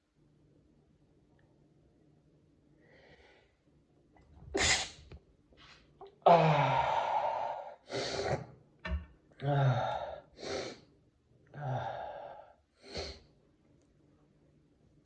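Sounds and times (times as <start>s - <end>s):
man sneezing: 4.6s - 5.0s.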